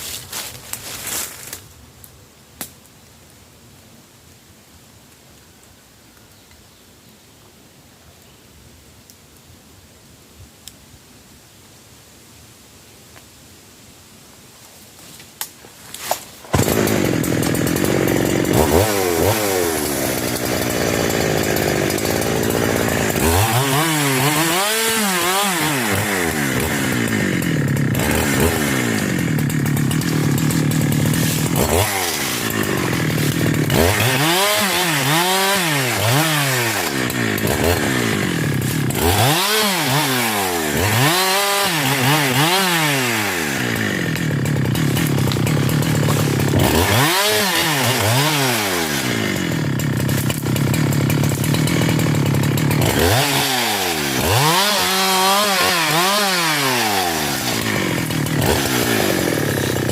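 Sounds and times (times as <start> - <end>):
chainsaw starter pulls: 16.0 - 59.9
chainsaw revving: 16.1 - 59.9.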